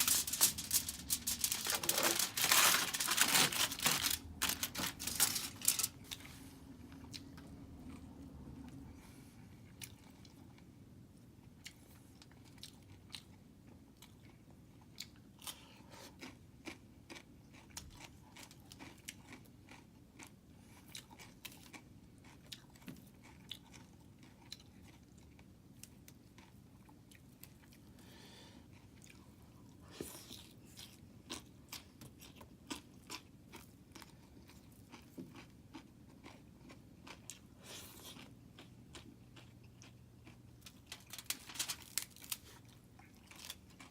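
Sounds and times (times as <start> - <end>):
person chewing crunchy food: 11.5 - 28.0, 28.6 - 41.2, 42.0 - 43.9.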